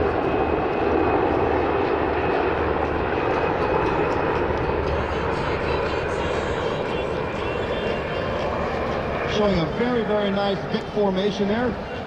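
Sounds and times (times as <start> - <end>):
helicopters flying past: 0.0 - 12.0.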